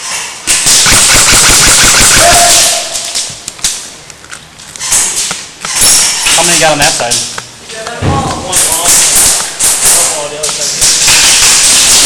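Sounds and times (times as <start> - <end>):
airsoft gun firing: 0.5 - 3.2.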